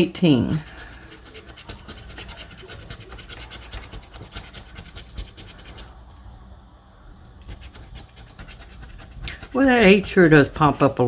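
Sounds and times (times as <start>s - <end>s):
scraping lottery ticket: 0.0s - 6.0s, 7.3s - 11.0s.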